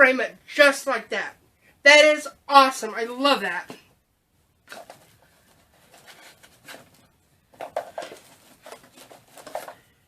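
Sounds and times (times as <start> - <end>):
rustling packing paper: 4.7 - 7.1, 7.7 - 10.0.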